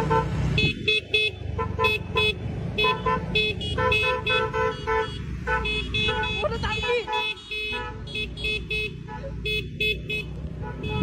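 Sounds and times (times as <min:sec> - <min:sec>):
engines rumbling: 0:00.0 - 0:11.0
motorcycle horns beeping: 0:00.0 - 0:11.0.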